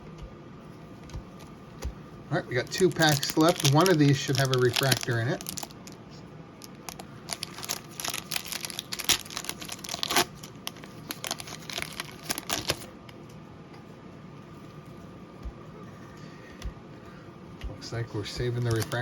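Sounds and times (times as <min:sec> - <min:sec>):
wrapper tearing and crinkling: 0:02.5 - 0:06.0, 0:06.6 - 0:12.9, 0:18.6 - 0:19.0.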